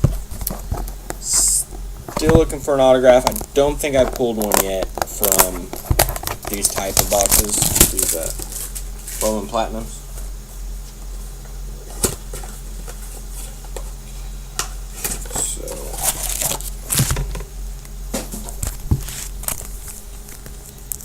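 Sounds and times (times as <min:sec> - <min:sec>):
steady low hum: 0:00.0 - 0:21.0
card wrappers crinkling and tearing: 0:03.2 - 0:09.4, 0:15.0 - 0:17.2, 0:18.6 - 0:21.0
cards being handled: 0:03.2 - 0:09.4, 0:15.0 - 0:17.2, 0:18.1 - 0:21.0.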